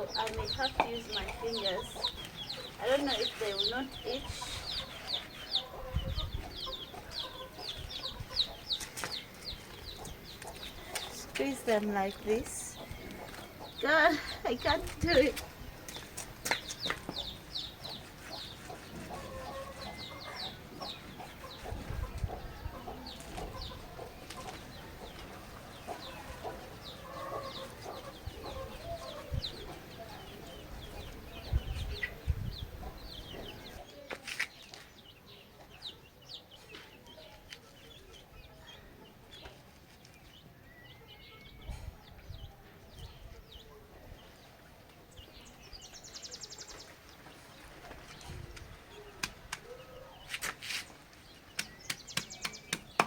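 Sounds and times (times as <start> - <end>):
hens clucking: 0.0 - 31.4.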